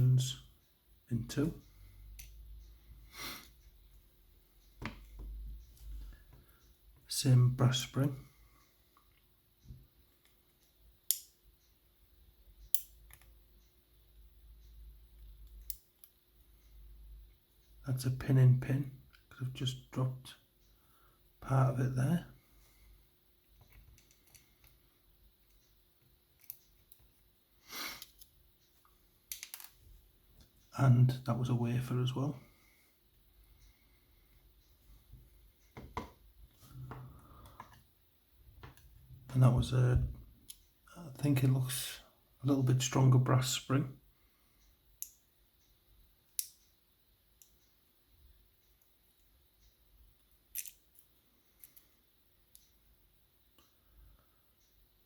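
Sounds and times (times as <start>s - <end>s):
tweezers clicking on small pins: 2.1s - 2.5s, 10.2s - 11.4s, 12.6s - 13.7s, 15.2s - 16.3s, 26.3s - 27.1s, 46.3s - 46.7s
small metallic clicks: 10.2s - 11.7s, 12.6s - 13.8s, 14.6s - 16.3s, 23.5s - 24.8s, 25.4s - 27.2s, 29.3s - 29.8s, 46.3s - 46.8s, 49.6s - 52.8s.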